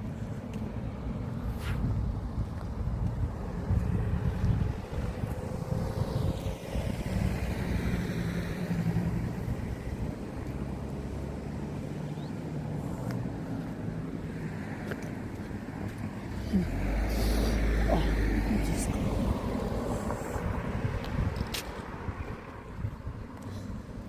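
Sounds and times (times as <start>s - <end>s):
steady low rumble: 0.0s - 24.0s
car driving past: 4.4s - 13.4s.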